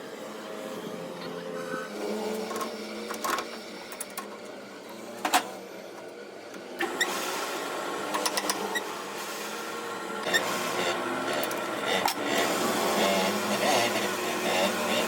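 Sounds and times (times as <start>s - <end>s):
small motor running: 10.2s - 15.0s.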